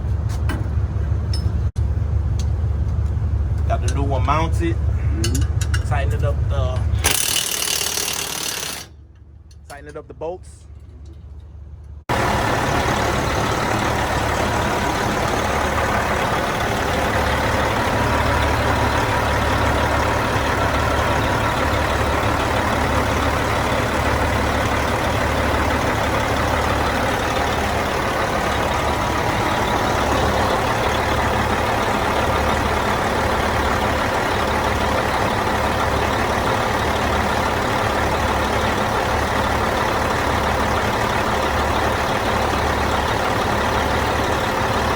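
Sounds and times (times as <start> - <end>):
diesel truck engine idling: 11.6 - 44.9.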